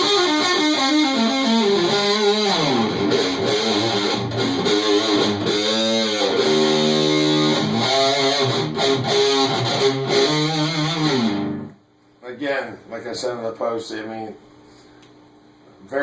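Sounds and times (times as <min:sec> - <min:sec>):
fuzzed electric guitar: 0:00.0 - 0:11.8.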